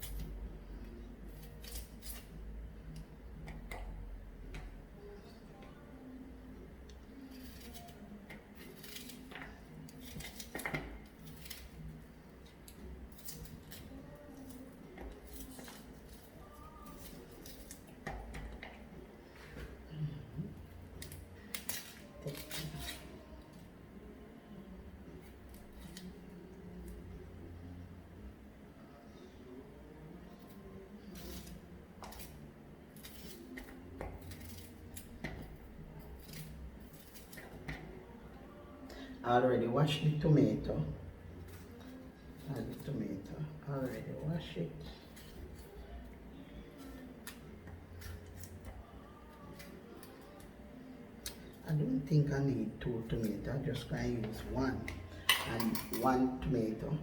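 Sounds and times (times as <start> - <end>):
knife cutting onion: 7.1 - 18.6, 31.0 - 37.8.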